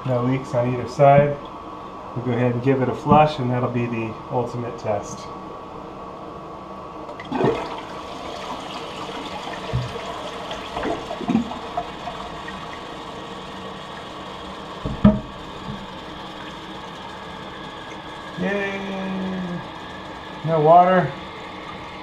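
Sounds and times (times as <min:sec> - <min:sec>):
toilet flushing: 0:07.1 - 0:19.8
knocks: 0:14.8 - 0:15.8.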